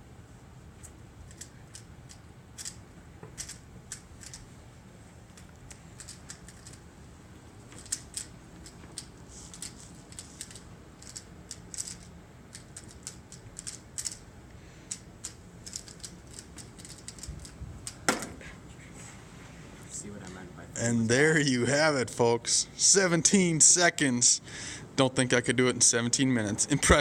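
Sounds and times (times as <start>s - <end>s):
puzzle cube clicking: 1.3s - 2.8s, 3.4s - 4.4s, 5.6s - 6.8s, 7.8s - 14.2s, 14.9s - 18.0s.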